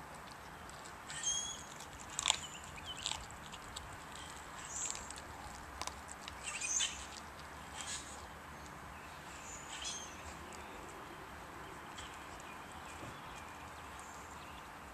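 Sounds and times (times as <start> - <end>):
dog chewing raw chicken: 0.0 - 14.9.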